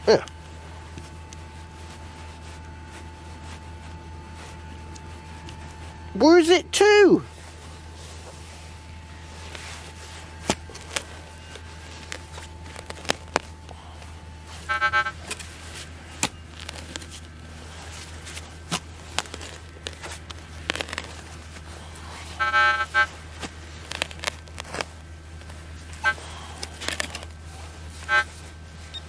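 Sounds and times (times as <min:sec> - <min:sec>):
steady low hum: 0:00.0 - 0:29.0
metal detector pulsing buzzes: 0:00.2 - 0:17.9, 0:22.0 - 0:23.3, 0:25.9 - 0:27.2, 0:27.9 - 0:29.0.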